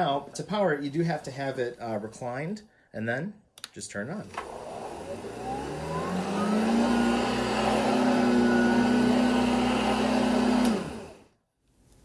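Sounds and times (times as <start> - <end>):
vacuum cleaner motor hum: 4.3 - 11.4.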